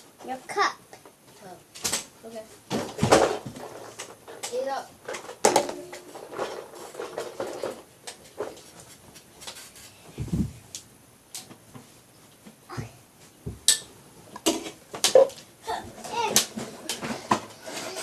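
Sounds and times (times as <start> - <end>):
household objects knocking and clicking: 2.7 - 7.8.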